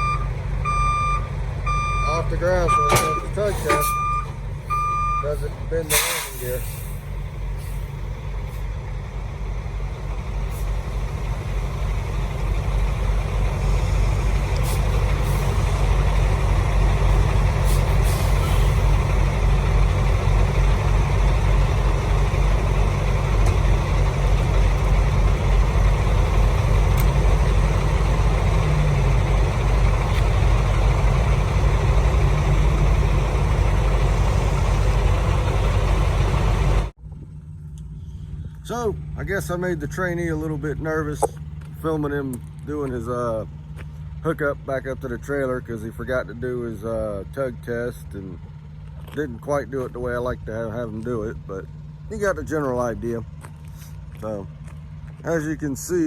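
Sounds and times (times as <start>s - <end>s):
diesel truck engine running: 0.0s - 56.0s
short air hisses: 5.9s - 7.0s.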